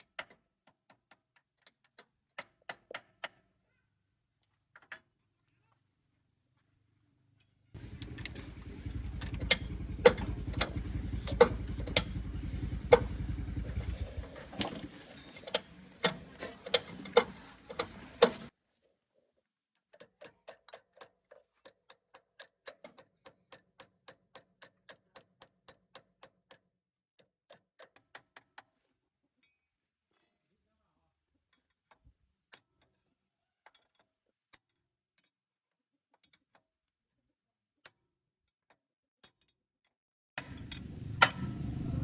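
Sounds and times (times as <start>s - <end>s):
steady low rumble: 7.8s - 14.5s, 40.5s - 42.0s.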